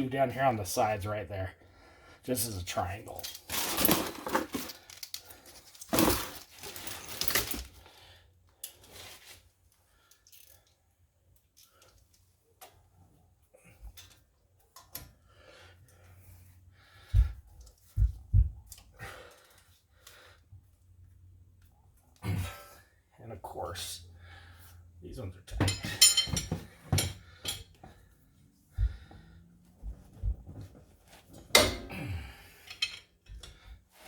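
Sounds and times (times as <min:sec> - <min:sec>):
metal tools clicking and clinking: 0:25.6 - 0:27.8, 0:32.6 - 0:33.6.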